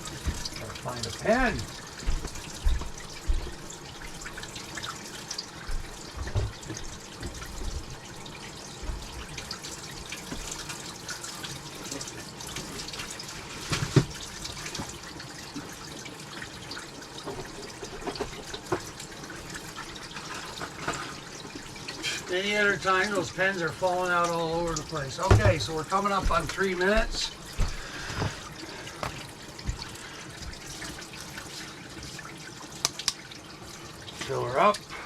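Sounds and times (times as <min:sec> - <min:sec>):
tap running into sink: 0:00.0 - 0:10.7, 0:17.2 - 0:21.6, 0:24.6 - 0:31.0.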